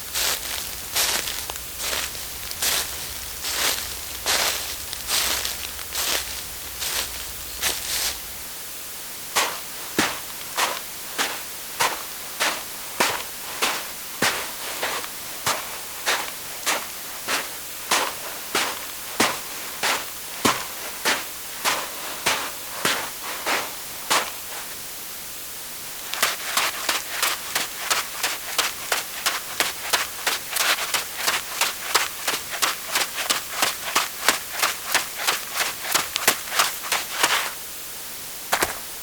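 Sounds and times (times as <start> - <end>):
footsteps on gritty surface: 0.0 - 8.4, 26.0 - 37.6, 38.5 - 38.9
steady hiss: 0.0 - 39.0.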